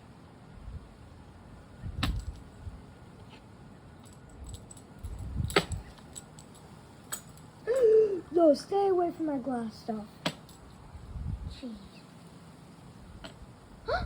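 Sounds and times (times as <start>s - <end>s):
wind rumbling on microphone: 1.7s - 2.8s, 5.0s - 6.0s, 10.8s - 11.8s, 13.0s - 14.0s.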